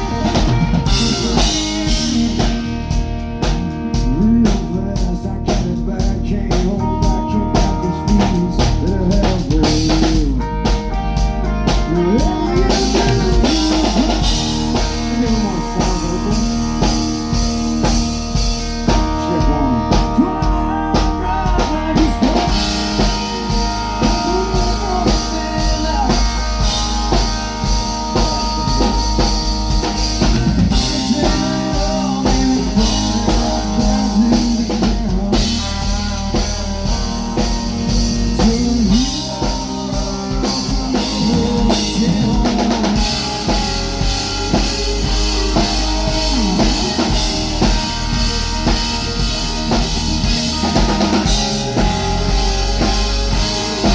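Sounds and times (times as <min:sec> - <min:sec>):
drum kit beat: 0:00.0 - 0:53.9
live band playing: 0:00.0 - 0:53.9.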